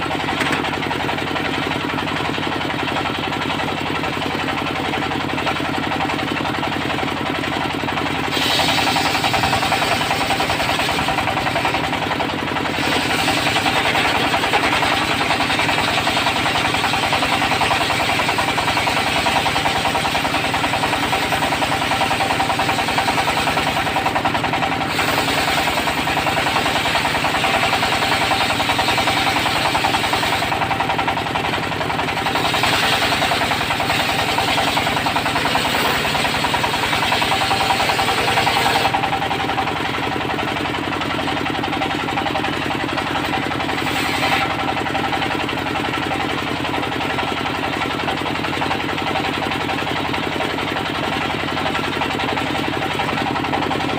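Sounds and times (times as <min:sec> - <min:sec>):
saw blade cutting wood: 0:00.0 - 0:01.2, 0:08.0 - 0:46.3
diesel engine running: 0:00.0 - 0:53.9.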